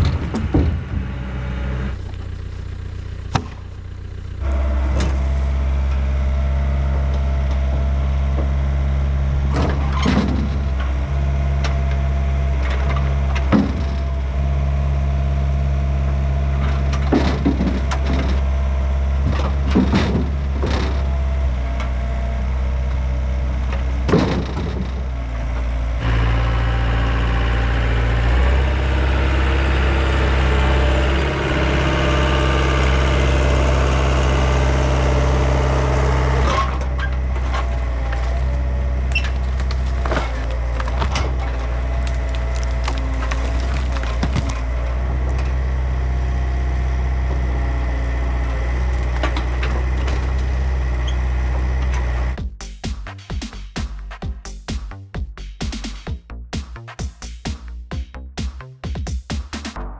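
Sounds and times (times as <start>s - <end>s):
excavator diesel engine running: 0.0s - 54.4s
sharp knocks and cracks: 9.4s - 11.0s, 12.6s - 14.2s, 16.6s - 18.5s, 19.2s - 21.3s, 23.7s - 25.2s, 39.1s - 44.8s.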